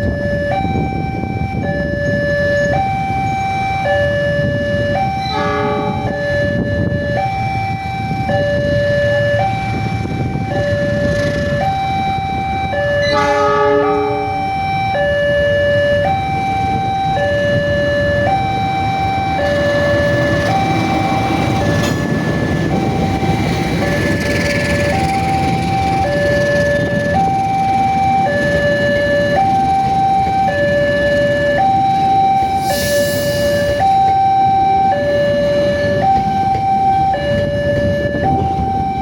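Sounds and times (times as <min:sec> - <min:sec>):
train rumble: 0:00.0 - 0:39.0
two-tone crossing alarm: 0:00.0 - 0:39.0
train horn blasts: 0:05.2 - 0:06.2, 0:13.0 - 0:14.4.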